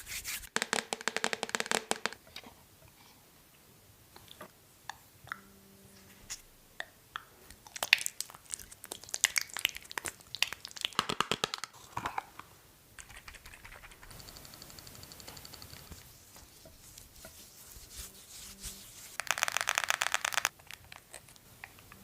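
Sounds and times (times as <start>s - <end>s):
crisp clicks and crackles: 19.2s - 22.0s.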